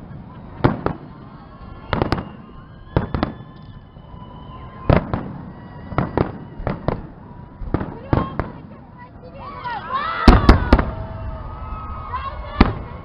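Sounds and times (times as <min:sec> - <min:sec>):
fireworks bangs: 0:00.0 - 0:13.0
faint high whistle: 0:00.3 - 0:07.4.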